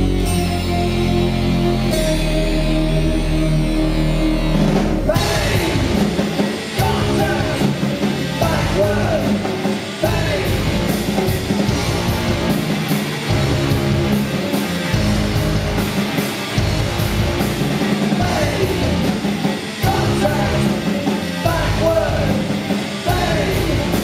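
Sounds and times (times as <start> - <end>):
droning chord: 0.0 - 6.4
live rock band: 0.0 - 24.0
person singing: 1.6 - 10.8
drum hits: 4.7 - 12.6.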